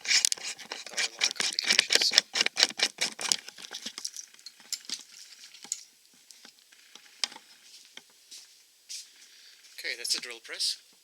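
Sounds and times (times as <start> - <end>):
objects clattering and clicking: 0.1 - 7.5.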